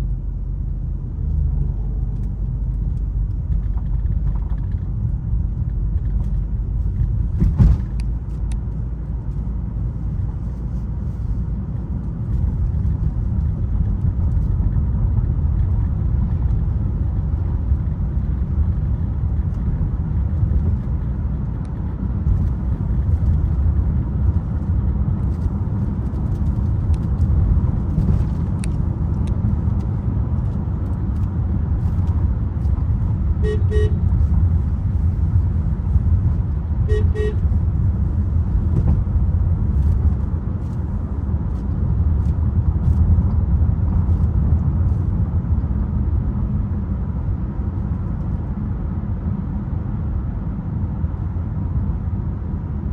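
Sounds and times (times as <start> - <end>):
car rumble inside cabin: 0.0 - 52.9
car horn toots: 33.4 - 34.1, 36.8 - 37.6.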